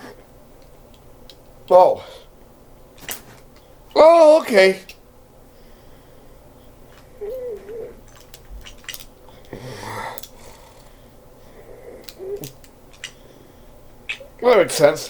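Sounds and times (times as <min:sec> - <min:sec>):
breathy exhale: 0:05.5 - 0:08.0, 0:09.3 - 0:12.4, 0:13.1 - 0:13.8
plastic pieces clicking: 0:06.9 - 0:11.0, 0:12.0 - 0:13.2
person humming: 0:07.1 - 0:08.0, 0:09.5 - 0:12.6.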